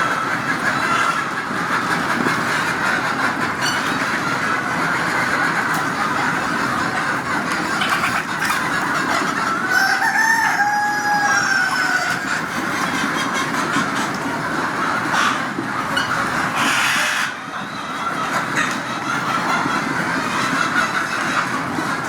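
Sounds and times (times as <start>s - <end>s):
chickens clucking: 0.0s - 22.0s
rooster crowing: 9.7s - 12.2s.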